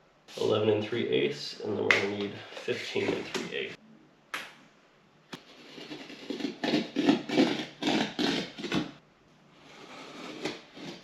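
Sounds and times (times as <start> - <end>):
blade rasping through drywall: 5.4 - 9.0, 9.6 - 11.0.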